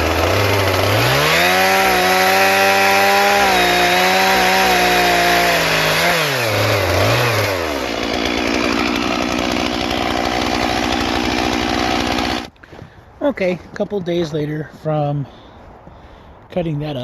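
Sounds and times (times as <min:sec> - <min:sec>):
chainsaw cutting log: 0:00.0 - 0:12.8.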